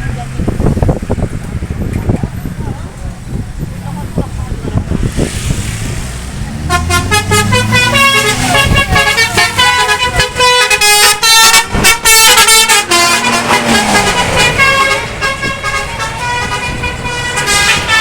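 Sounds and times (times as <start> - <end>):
bus engine rumble: 0.0 - 18.0
multi-tone bus air horn melody: 6.6 - 18.0.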